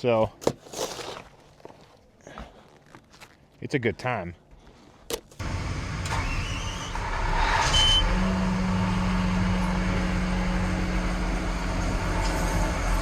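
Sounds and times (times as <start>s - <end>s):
machine engine humming: 5.4s - 13.0s.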